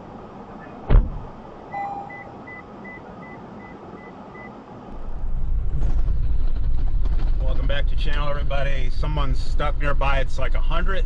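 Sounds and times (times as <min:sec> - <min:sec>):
vehicle warning beeps: 0:01.7 - 0:04.6
loud low rumble: 0:04.9 - 0:11.0.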